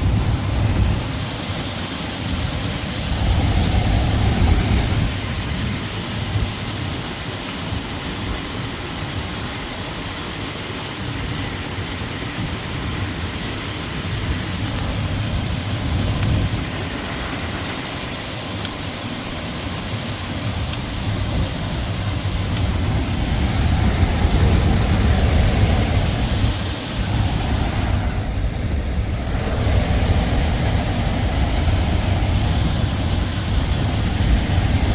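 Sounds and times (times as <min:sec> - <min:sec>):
air handler blower humming: 0:00.0 - 0:06.5, 0:14.0 - 0:34.9.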